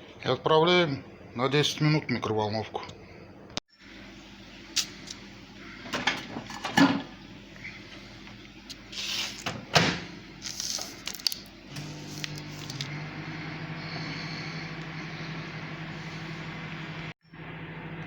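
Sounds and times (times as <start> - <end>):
microwave humming: 3.8 - 18.0.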